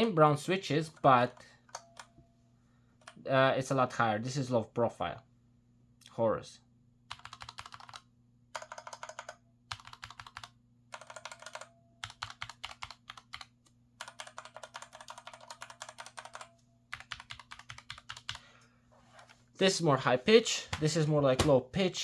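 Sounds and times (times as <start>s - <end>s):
mechanical keyboard typing: 7.1s - 18.4s.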